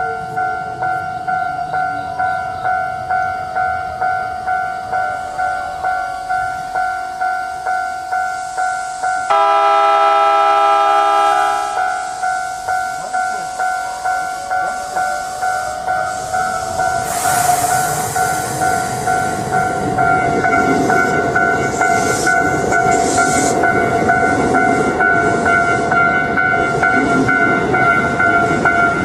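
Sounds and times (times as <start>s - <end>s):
level-crossing warning bell: 0.0s - 29.0s
train passing over crossing: 0.0s - 29.0s
train horn: 9.3s - 12.2s.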